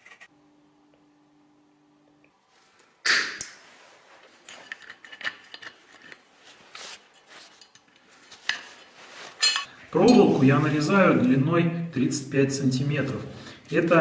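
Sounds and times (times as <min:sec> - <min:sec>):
metal hardware clattering: 0:09.4 - 0:10.3.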